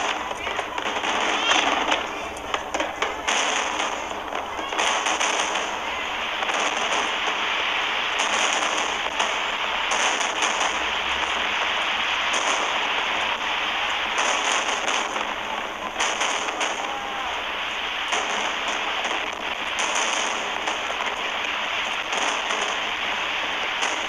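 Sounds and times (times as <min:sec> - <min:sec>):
fireworks crackling: 0:00.0 - 0:24.0.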